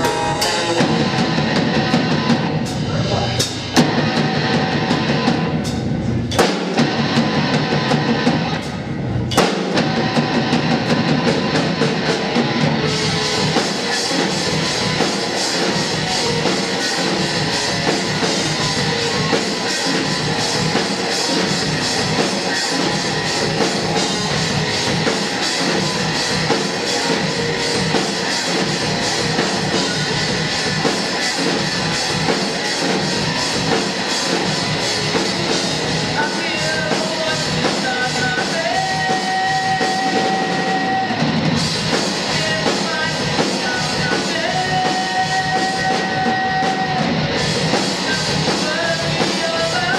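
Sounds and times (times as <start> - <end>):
lead guitar long high notes: 0.0 - 5.7, 6.4 - 49.9
live rock band playing: 0.0 - 49.9.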